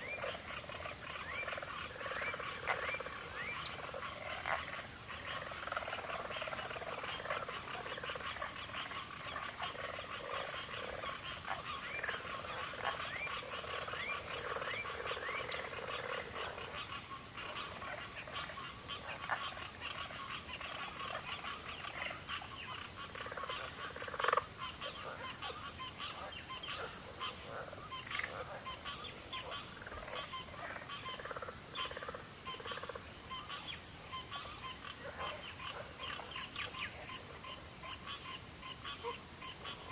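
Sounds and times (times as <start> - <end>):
crickets trilling: 0.0 - 39.9.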